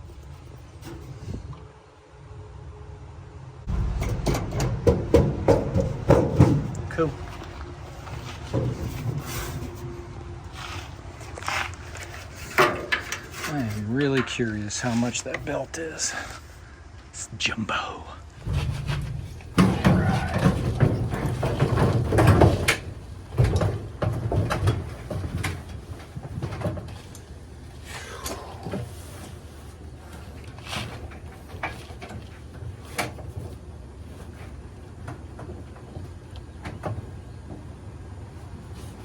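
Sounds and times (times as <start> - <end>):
appliance parts clattering: 3.7 - 10.0, 10.6 - 16.6, 18.4 - 27.8.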